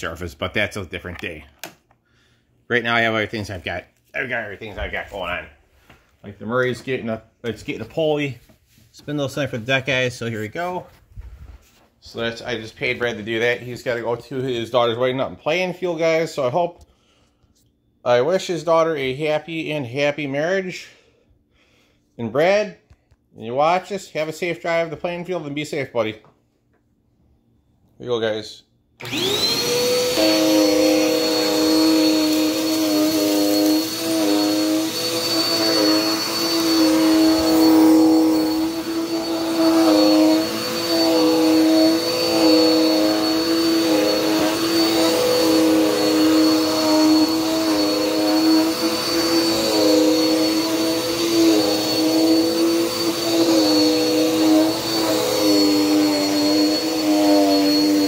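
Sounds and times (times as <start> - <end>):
vacuum cleaner motor whining: 29.0 - 58.0.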